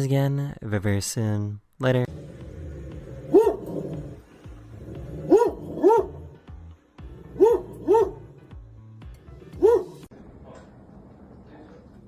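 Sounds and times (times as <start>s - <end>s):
dog barking: 3.3s - 4.2s, 5.0s - 6.4s, 7.2s - 8.4s, 9.6s - 10.1s.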